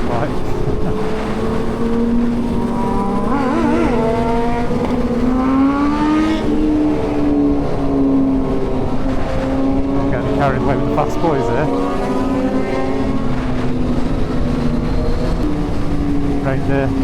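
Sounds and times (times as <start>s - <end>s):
motorcycle engines cruising: 0.0s - 17.0s
wind and road noise: 0.0s - 17.0s.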